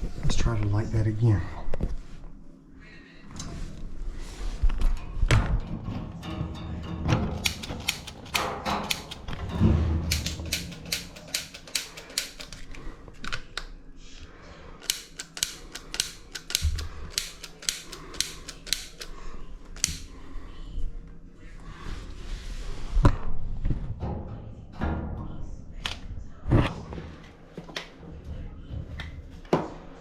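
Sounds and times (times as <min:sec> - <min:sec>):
pilot igniter clicking: 0:07.4 - 0:09.4, 0:10.1 - 0:12.7, 0:14.8 - 0:19.2, 0:19.8 - 0:20.1.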